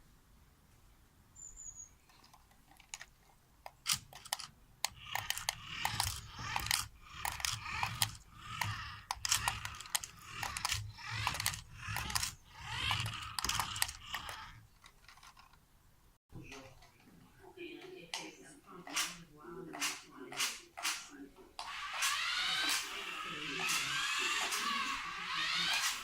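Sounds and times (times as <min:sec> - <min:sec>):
plastic clicking: 0:02.0 - 0:15.6
crunchy plastic rattling: 0:02.0 - 0:15.7.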